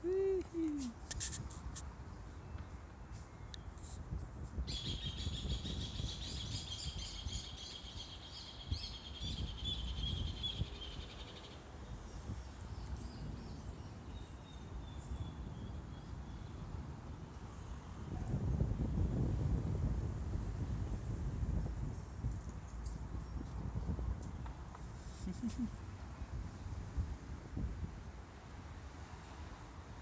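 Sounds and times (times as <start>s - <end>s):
wind buffeting microphone: 4.0s - 8.0s, 17.9s - 24.7s.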